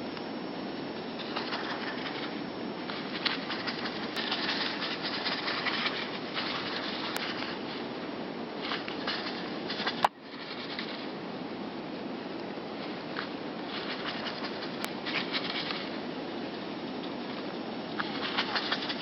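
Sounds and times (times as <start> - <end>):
steady background hiss: 0.0 - 19.0
bird wings flapping: 1.1 - 8.0, 8.6 - 11.2, 12.8 - 16.6, 17.2 - 19.0.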